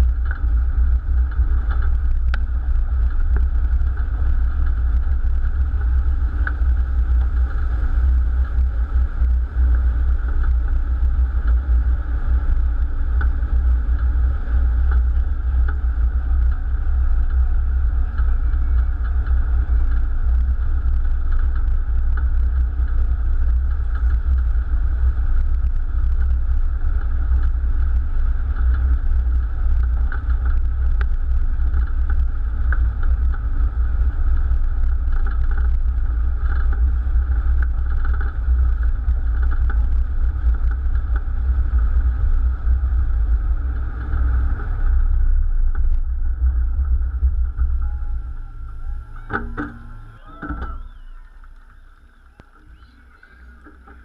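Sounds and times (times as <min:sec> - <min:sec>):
propeller plane piston engines droning: 0:00.0 - 0:26.4, 0:42.7 - 0:54.0.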